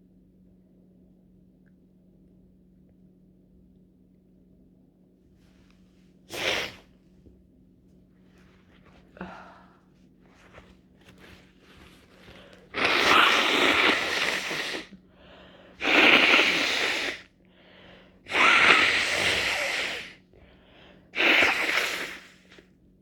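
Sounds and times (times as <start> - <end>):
person sneezing wetly: 6.3 - 6.9, 12.7 - 14.9, 15.8 - 17.3, 18.3 - 20.2, 21.2 - 22.5.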